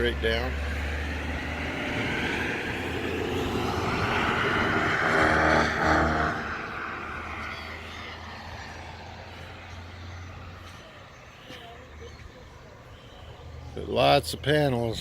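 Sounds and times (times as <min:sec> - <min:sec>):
engine passing by: 0:00.0 - 0:15.0.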